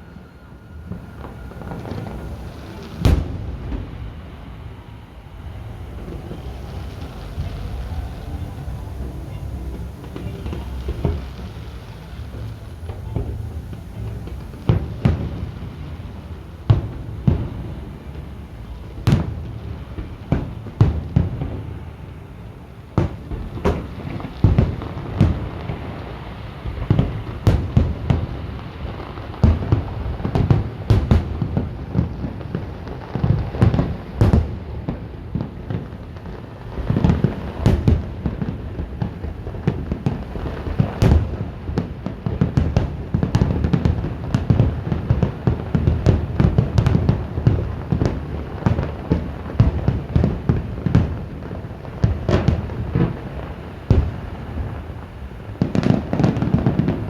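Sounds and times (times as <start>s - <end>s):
low rumble and crackle: 0.0s - 57.0s.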